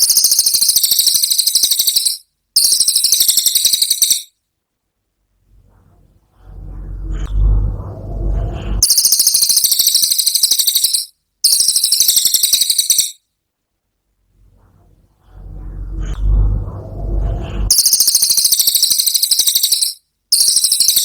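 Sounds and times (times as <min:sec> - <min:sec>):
bird high-pitched trills: 0:00.0 - 0:04.3, 0:08.8 - 0:13.2, 0:17.7 - 0:21.0
low muffled rumbling: 0:05.4 - 0:08.8, 0:14.3 - 0:17.7.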